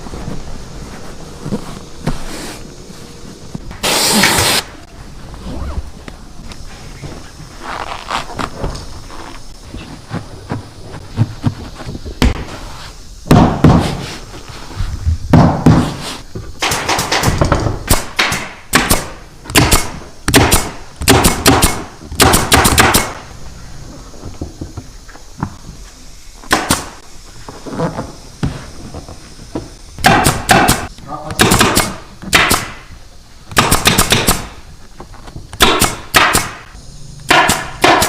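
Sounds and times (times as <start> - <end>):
sharp knocks and clatter: 16.6 - 23.2.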